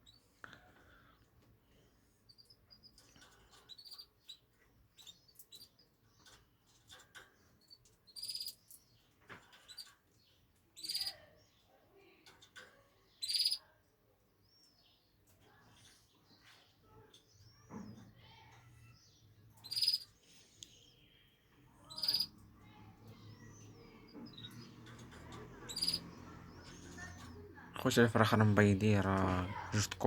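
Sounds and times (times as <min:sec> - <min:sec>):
birds chirping: 0:00.0 - 0:30.0.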